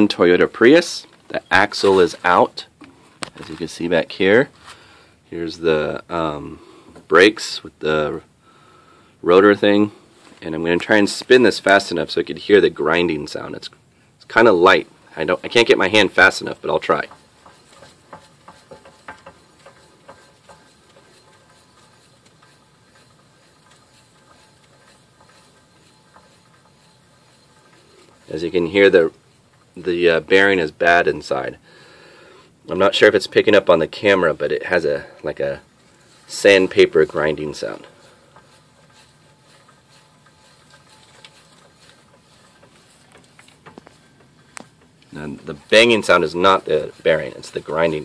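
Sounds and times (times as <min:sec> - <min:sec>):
wheel bearing grinding: 0:14.2 - 0:31.6, 0:32.8 - 0:48.0
light knocks of hub: 0:16.3 - 0:28.7.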